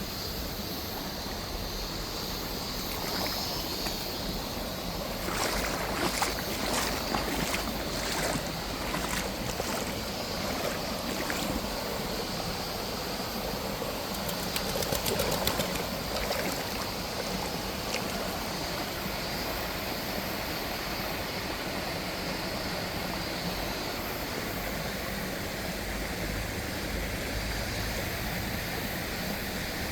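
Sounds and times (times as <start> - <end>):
stream flowing: 0.1 - 29.9
water splashing: 2.7 - 12.4, 14.1 - 19.0.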